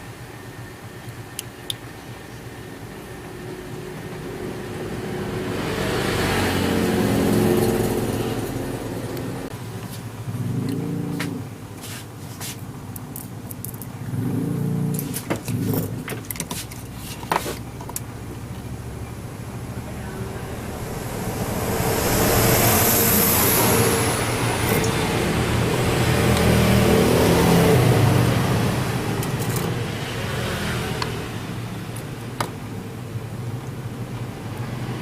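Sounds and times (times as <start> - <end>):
engine running: 2.6 - 11.5, 17.8 - 34.6.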